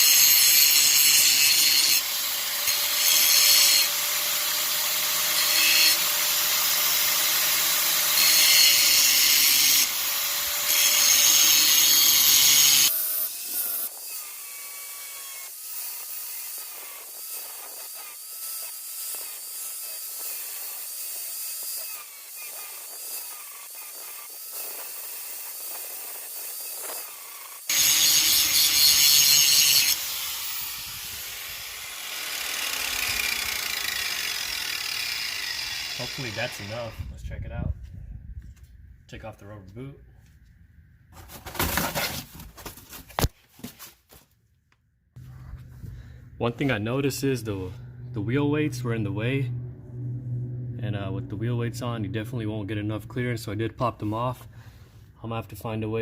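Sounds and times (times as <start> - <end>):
power grinder grinding metal: 0.0 - 37.0.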